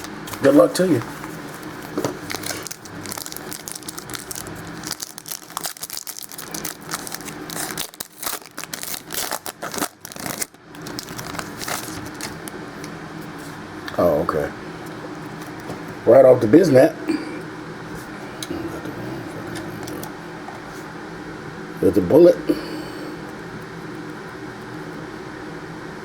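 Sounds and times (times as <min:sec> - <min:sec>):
plastic wrapping crinkling and tearing: 0:00.0 - 0:12.6.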